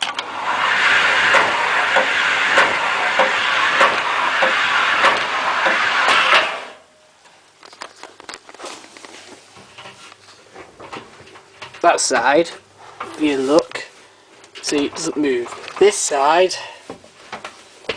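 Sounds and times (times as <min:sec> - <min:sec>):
drum knocking and scraping rattle: 0:00.0 - 0:06.8, 0:14.6 - 0:16.3
tumble dryer running: 0:00.0 - 0:06.8.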